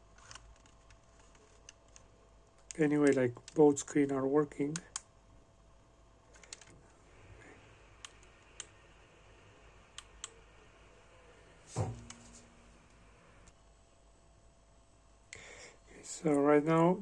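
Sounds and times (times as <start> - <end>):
faint steady tone: 5.2 - 17.0
soft knock: 11.7 - 12.4.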